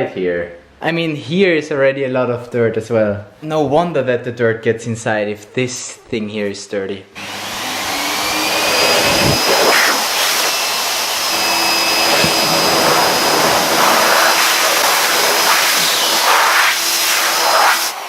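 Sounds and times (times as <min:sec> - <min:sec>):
vacuum air noise surging: 0:07.2 - 0:18.0
vacuum cleaner motor whine: 0:07.2 - 0:18.0.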